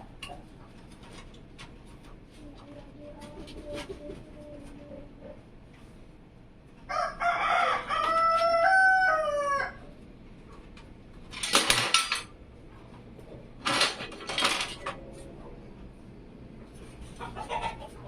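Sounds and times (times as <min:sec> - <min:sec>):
rooster crowing: 0:06.8 - 0:10.0.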